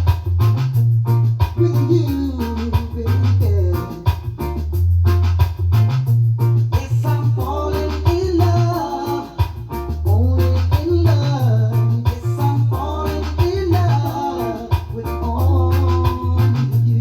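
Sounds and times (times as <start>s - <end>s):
reggae music: 0.0s - 17.0s.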